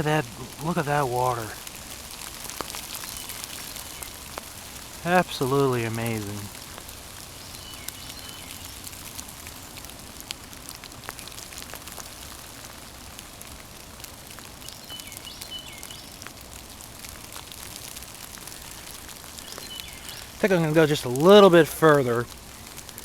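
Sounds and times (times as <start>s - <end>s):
water drops pattering: 0.0s - 10.4s, 15.9s - 23.0s
steady hiss: 0.0s - 23.0s
bird chirping: 7.4s - 8.8s, 19.4s - 21.0s.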